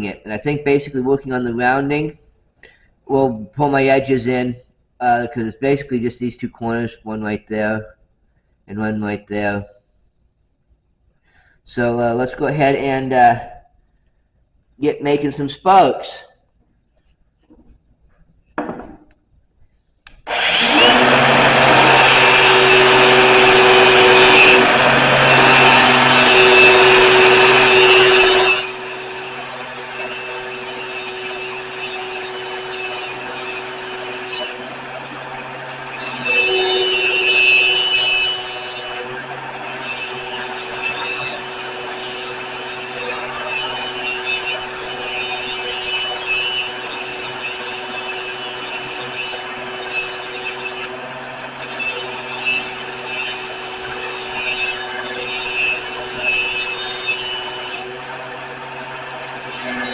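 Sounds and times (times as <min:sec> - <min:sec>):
grinder motor hum: 0:20.3 - 0:59.9.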